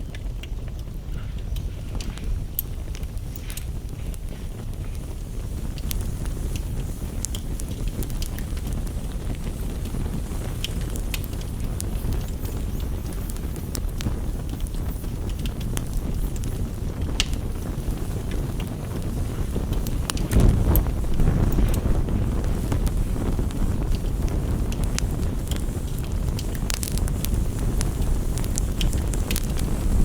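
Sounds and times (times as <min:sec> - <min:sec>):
campfire crackling and popping: 0:00.0 - 0:30.0
rain on a window: 0:02.7 - 0:30.0.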